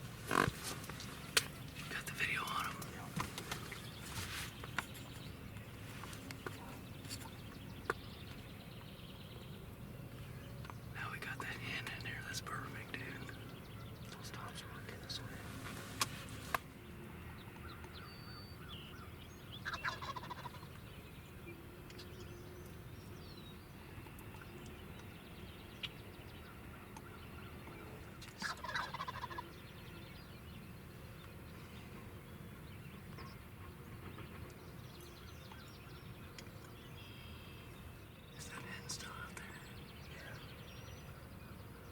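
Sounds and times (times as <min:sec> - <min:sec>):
turkey gobbling: 0:19.8 - 0:20.6, 0:28.4 - 0:29.4.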